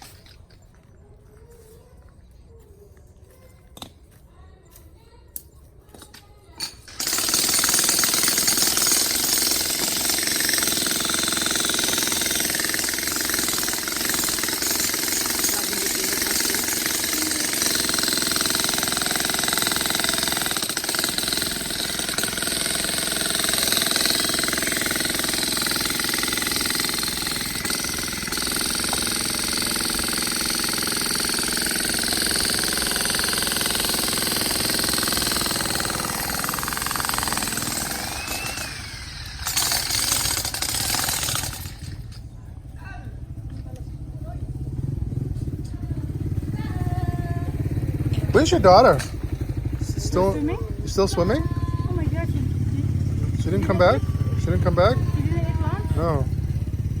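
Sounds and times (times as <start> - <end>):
loud machine running: 6.9 - 42.0.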